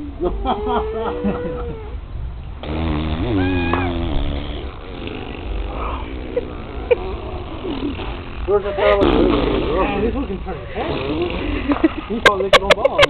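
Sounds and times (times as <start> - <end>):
dog growly vocalization: 2.6 - 10.1.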